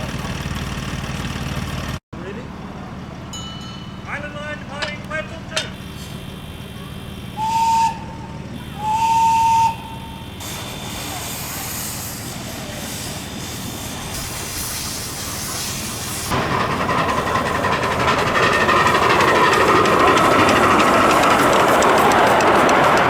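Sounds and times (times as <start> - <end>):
miniature steam locomotive running: 0.0 - 23.0
steam hissing: 5.0 - 23.0.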